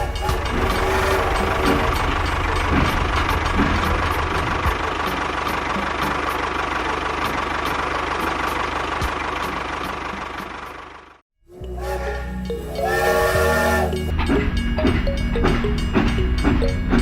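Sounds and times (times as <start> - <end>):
machine motor humming and rattling: 0.1 - 11.0.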